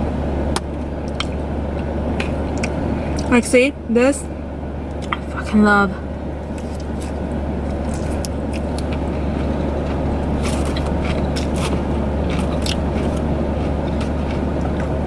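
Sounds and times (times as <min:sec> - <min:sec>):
steady low hum: 0:00.0 - 0:15.0
chewing and biting food: 0:00.6 - 0:03.3, 0:06.5 - 0:15.0.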